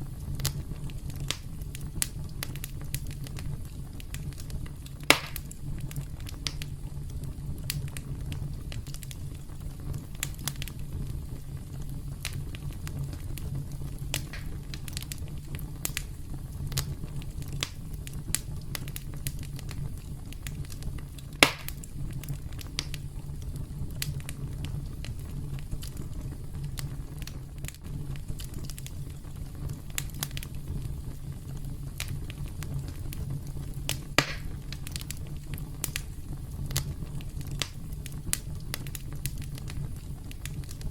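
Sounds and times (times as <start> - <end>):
campfire crackling: 0.0 - 40.9
loud pop from fire: 4.1 - 6.7, 14.1 - 16.1, 20.4 - 23.0, 33.9 - 36.1.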